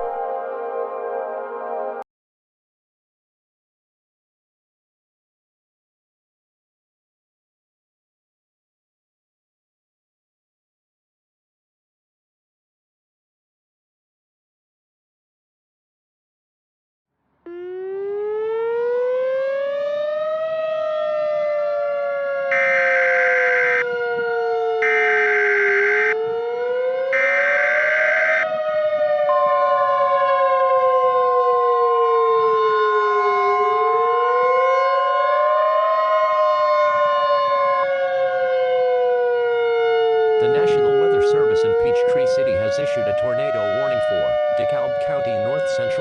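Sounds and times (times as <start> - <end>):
civil defense siren wailing: 0.0 - 2.0, 17.4 - 46.0
steady warning alarm tone: 0.0 - 2.0, 17.5 - 37.6, 39.9 - 46.0.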